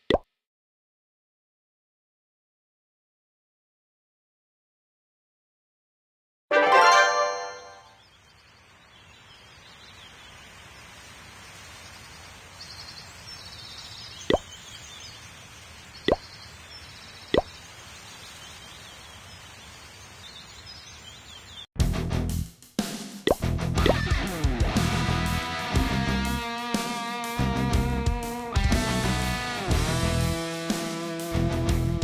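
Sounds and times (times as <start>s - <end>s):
music chord: 6.5s - 7.9s
faint high chirps: 6.5s - 21.7s
faint outdoor hiss: 6.5s - 21.7s
sharp plops: 14.2s - 14.5s, 17.3s - 17.6s, 23.3s - 24.0s.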